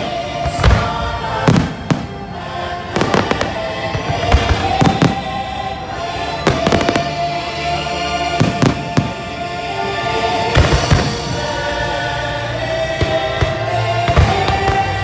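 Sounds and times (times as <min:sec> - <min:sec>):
music playing: 0:00.0 - 0:15.0
fireworks bangs: 0:00.5 - 0:05.7, 0:06.4 - 0:07.4, 0:08.4 - 0:09.4, 0:10.5 - 0:11.5, 0:12.9 - 0:15.0.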